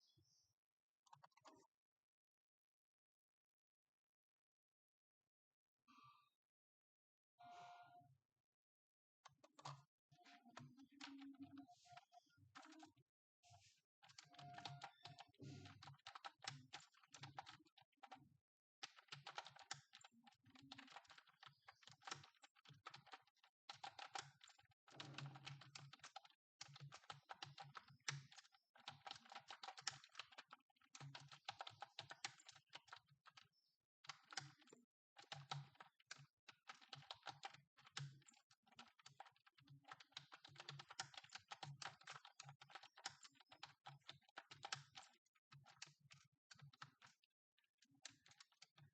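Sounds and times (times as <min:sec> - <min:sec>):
keyboard typing: 0:09.3 - 0:13.0, 0:14.0 - 0:48.9.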